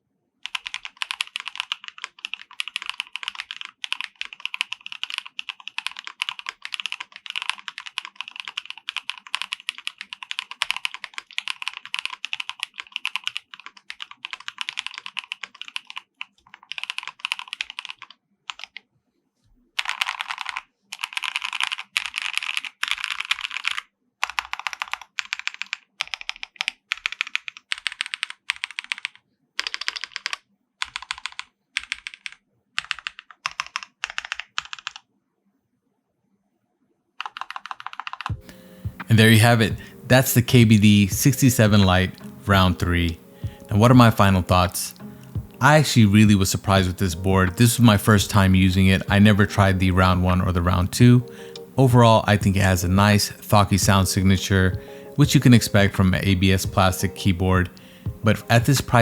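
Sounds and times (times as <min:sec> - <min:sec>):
mechanical keyboard typing: 0:00.4 - 0:18.8, 0:19.8 - 0:35.0, 0:37.2 - 0:39.0.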